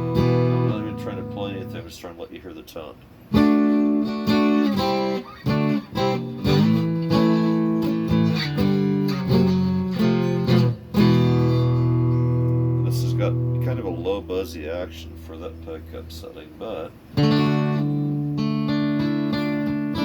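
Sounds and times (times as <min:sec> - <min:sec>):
electric guitar chords: 0:00.0 - 0:02.0, 0:03.3 - 0:20.0.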